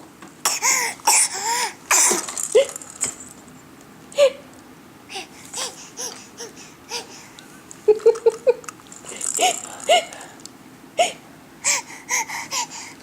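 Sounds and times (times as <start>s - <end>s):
baby gasping: 0.5s - 2.2s, 5.1s - 7.4s, 11.0s - 13.0s.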